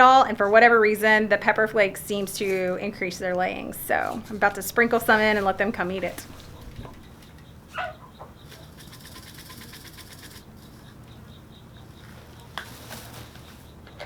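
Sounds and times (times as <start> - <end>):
low steady hum: 0.0 - 9.0
chicken chirp: 6.0 - 12.6.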